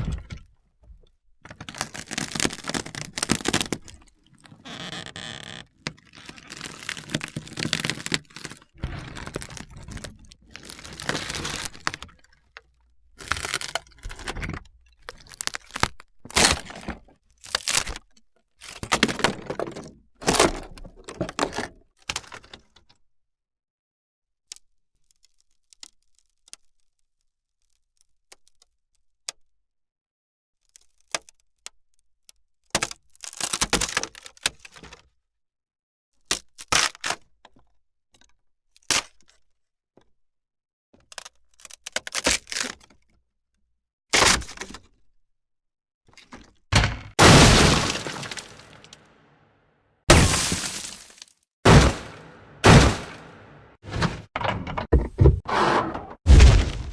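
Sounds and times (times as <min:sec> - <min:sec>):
wood cracking and splintering: 0:00.0 - 0:22.9, 0:32.7 - 0:35.1, 0:36.3 - 0:39.4, 0:41.0 - 0:43.1, 0:46.1 - 0:49.2, 0:50.1 - 0:55.3, 0:56.3 - 0:56.9.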